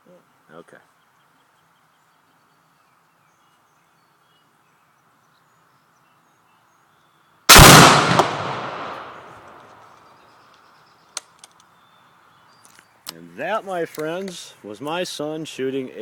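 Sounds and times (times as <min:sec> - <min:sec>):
explosive target boom echoing: 0:07.5 - 0:09.5.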